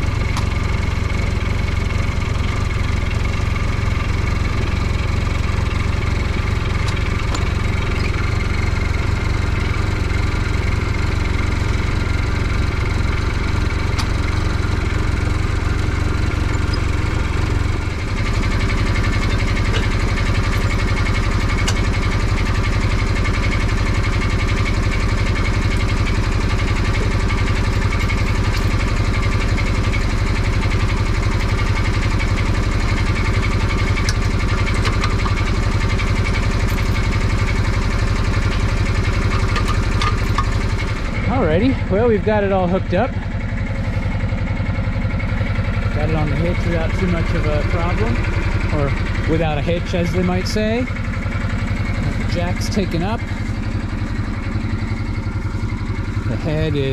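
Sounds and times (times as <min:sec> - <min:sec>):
utility vehicle engine idling: 0:00.0 - 0:56.9.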